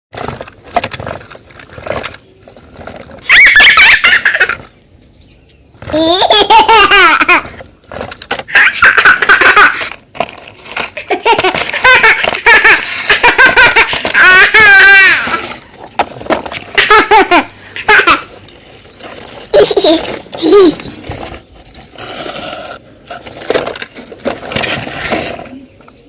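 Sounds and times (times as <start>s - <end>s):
baby laughing: 3.3s - 4.7s, 5.9s - 7.6s, 8.4s - 10.0s, 11.0s - 15.6s, 16.6s - 18.4s, 19.5s - 20.9s.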